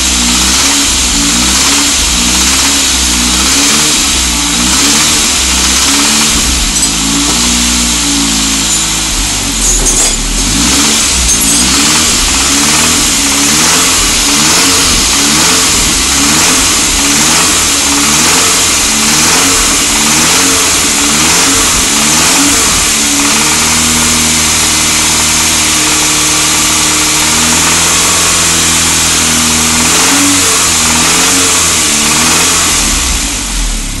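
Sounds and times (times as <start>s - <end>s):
car engine revving: 0.0s - 34.0s
engine knocking: 0.0s - 34.0s.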